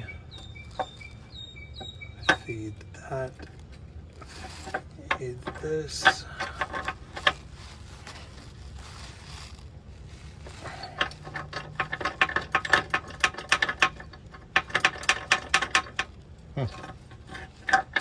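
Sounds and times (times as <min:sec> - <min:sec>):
bolt rattling inside steel frame: 0:11.0 - 0:16.1.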